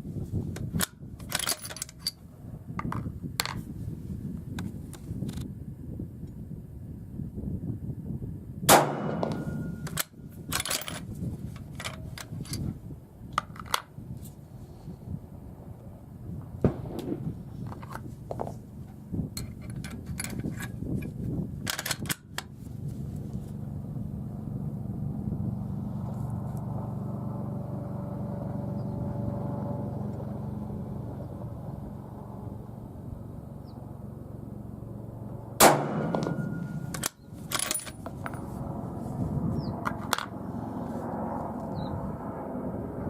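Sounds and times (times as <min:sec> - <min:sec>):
suppressed rifle shots: 0:08.7 - 0:10.0, 0:16.6 - 0:17.6, 0:35.6 - 0:38.4.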